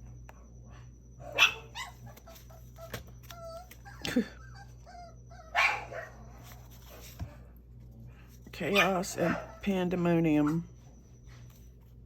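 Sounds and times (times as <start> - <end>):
dog barking: 1.2 - 2.0, 5.5 - 6.4, 8.6 - 10.7
dog whining: 1.2 - 6.6.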